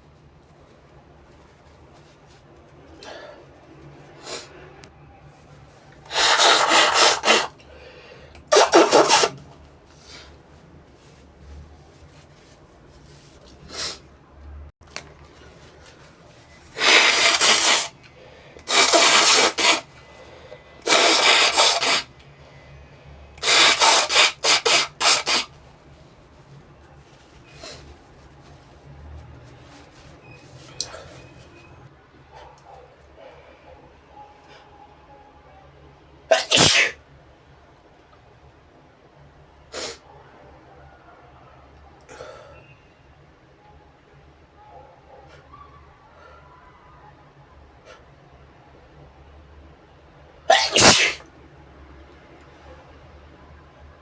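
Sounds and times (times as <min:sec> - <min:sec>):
brush bristles rubbing: 0:15.4 - 0:18.0, 0:18.6 - 0:19.9.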